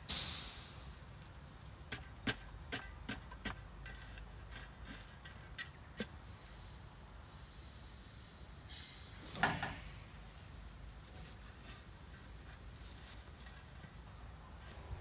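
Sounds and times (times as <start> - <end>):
short hiss: 6.4 - 10.6.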